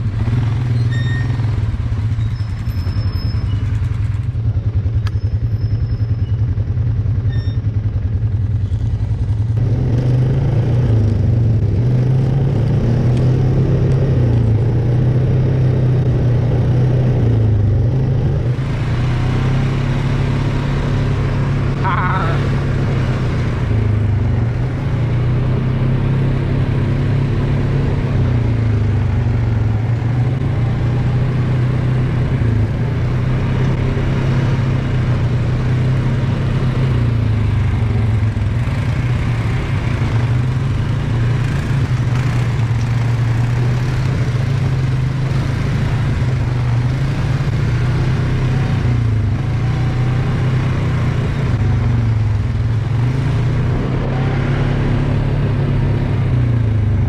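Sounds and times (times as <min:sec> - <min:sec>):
atv engine running: 0:00.0 - 0:57.0.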